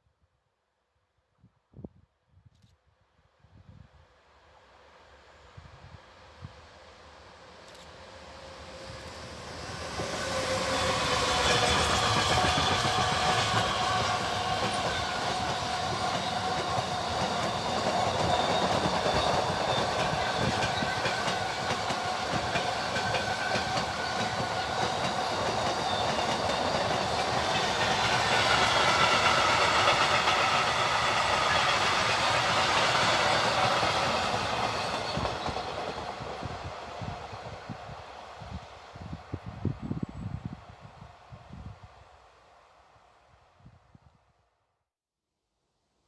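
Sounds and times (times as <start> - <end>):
freight train rolling past: 5.1 - 42.1
wheels ringing on rails: 8.9 - 39.0.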